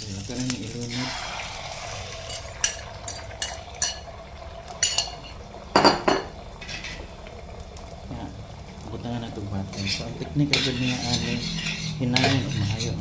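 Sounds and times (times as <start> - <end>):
utensil scraping against a pan: 9.6 - 13.0.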